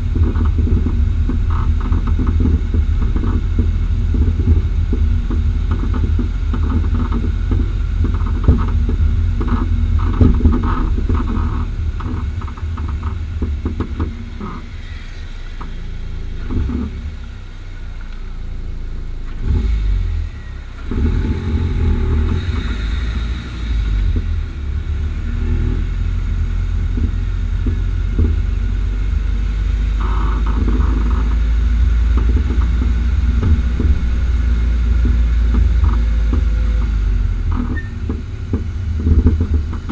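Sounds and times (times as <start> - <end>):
suspension pops and knocks: 0.0 - 14.8, 15.5 - 17.4, 25.4 - 39.9
car road rumble: 0.0 - 39.9.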